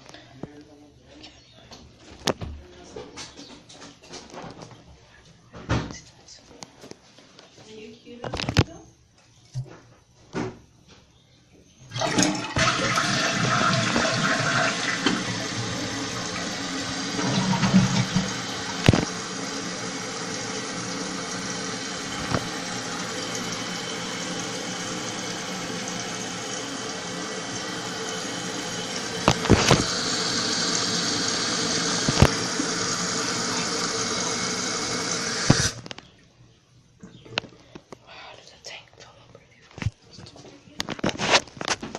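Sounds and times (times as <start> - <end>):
toilet flushing water rushing: 11.9 - 35.8
knocks in plumbing: 12.0 - 19.2, 28.9 - 35.8.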